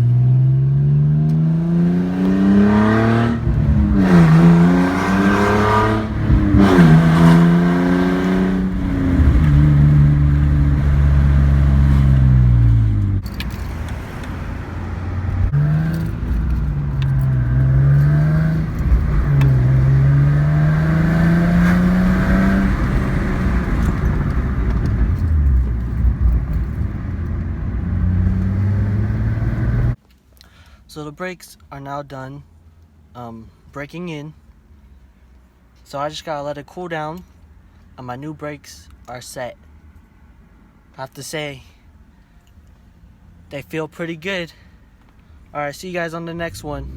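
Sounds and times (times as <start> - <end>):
car engine accelerating and slowing: 0.0 - 30.0, 46.3 - 46.9.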